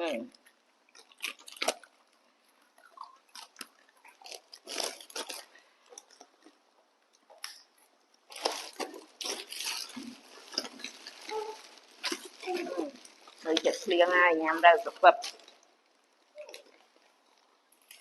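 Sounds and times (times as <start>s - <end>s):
crunchy snack being chewed: 0.4s - 6.6s, 8.3s - 13.5s.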